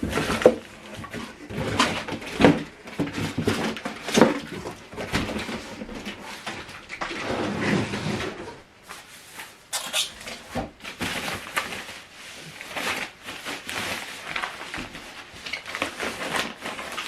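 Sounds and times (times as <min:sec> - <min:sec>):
boxes scraping and knocking: 0:00.0 - 0:17.0
packaging rustling: 0:09.0 - 0:17.0.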